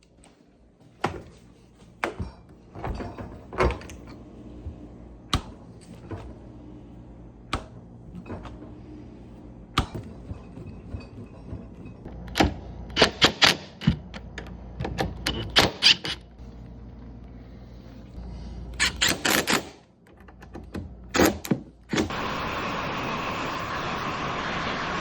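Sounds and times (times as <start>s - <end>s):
steady noise: 22.1s - 25.0s.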